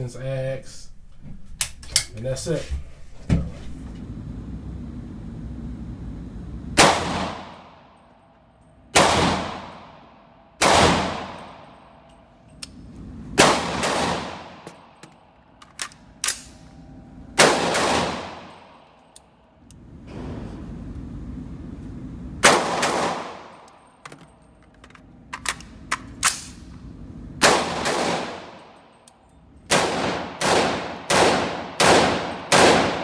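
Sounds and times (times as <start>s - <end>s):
gunshots with echo: 6.8s - 7.9s, 8.9s - 12.0s, 13.4s - 15.0s, 17.4s - 19.0s, 22.4s - 23.7s, 27.4s - 28.8s, 29.7s - 33.0s.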